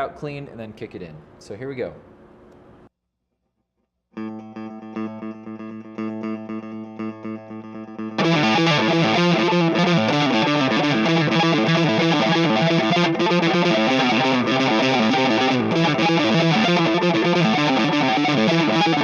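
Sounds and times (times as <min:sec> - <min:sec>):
clean electric guitar: 0:04.1 - 0:19.0
distorted electric guitar: 0:04.2 - 0:19.0.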